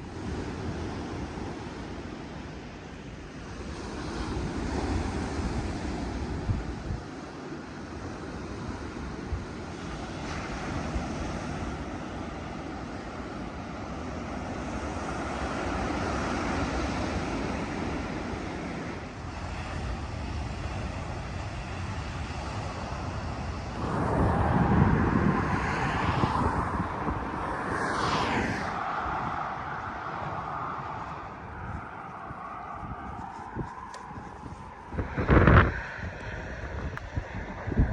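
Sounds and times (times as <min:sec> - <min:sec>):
wind on microphone: 0:00.0 - 0:37.9
passing traffic rush: 0:07.8 - 0:37.9
vehicle passing close: 0:23.8 - 0:37.9.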